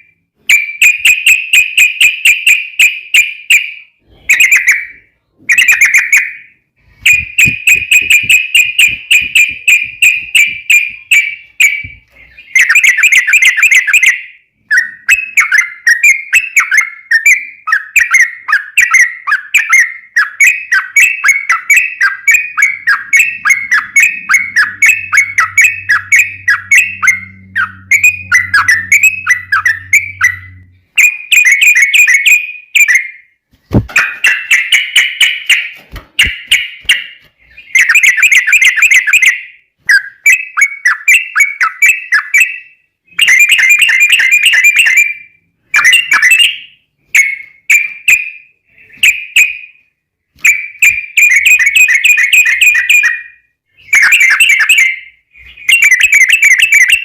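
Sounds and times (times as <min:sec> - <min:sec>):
bird singing chattering notes: 0:07.0 - 0:33.0.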